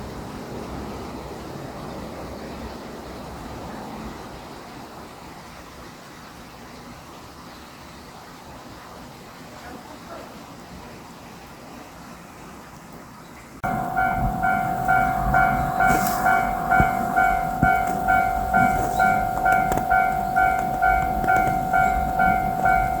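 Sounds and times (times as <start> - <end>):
electronic level-crossing ding: 13.6 - 23.0
steady alarm tone: 13.6 - 23.0.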